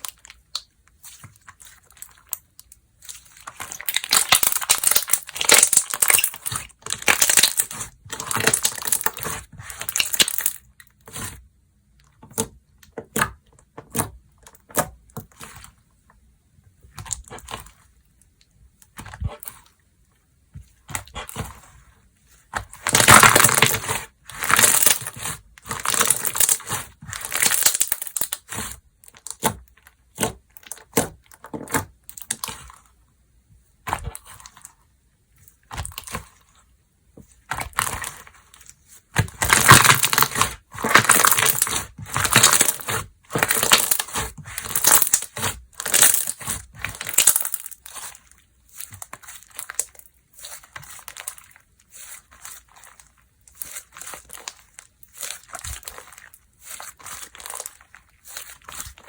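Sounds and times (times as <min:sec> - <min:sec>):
slime squished by hand: 0:00.0 - 0:11.4, 0:37.4 - 0:59.0.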